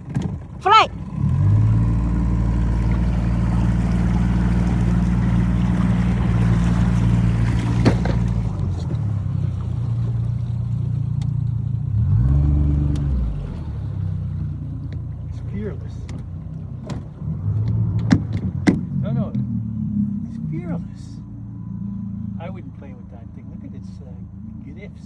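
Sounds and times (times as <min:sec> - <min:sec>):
motor engine running: 0:00.8 - 0:16.6.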